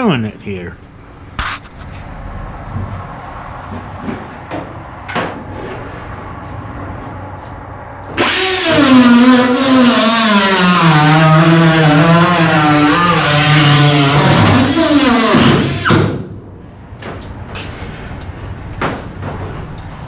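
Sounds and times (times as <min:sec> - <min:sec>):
cut-off tool cutting sheet metal: 0:08.2 - 0:16.1.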